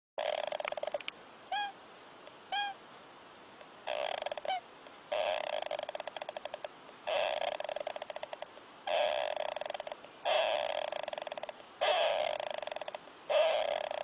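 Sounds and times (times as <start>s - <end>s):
hamster snoring: 0.2s - 1.0s, 3.9s - 14.0s
short single squeaks: 3.9s - 14.0s.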